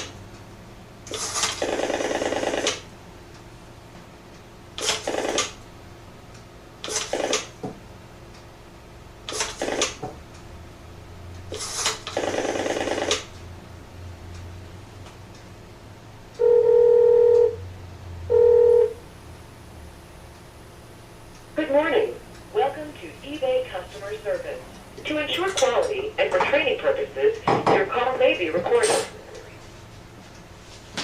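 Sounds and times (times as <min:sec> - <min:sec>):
loud steady tones: 0:21.5 - 0:29.1.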